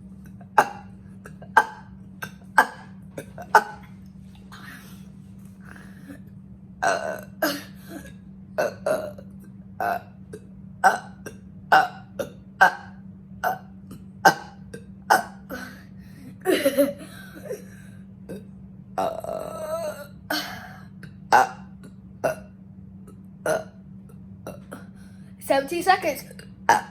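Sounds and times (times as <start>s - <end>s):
person burping: 0.5s - 3.9s, 6.8s - 9.2s, 9.8s - 10.1s, 10.8s - 15.8s, 19.0s - 22.5s, 23.5s - 23.8s, 26.7s - 26.9s.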